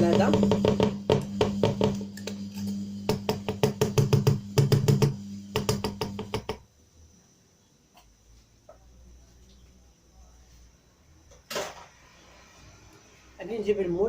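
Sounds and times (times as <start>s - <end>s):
beaters clattering against bowl: 0.0s - 6.6s
electric mixer motor hum: 0.0s - 6.6s.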